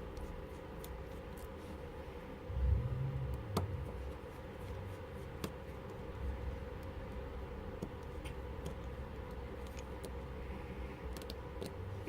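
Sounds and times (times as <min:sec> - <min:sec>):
steady low hum: 0:00.0 - 0:12.0
low bump: 0:02.5 - 0:04.3.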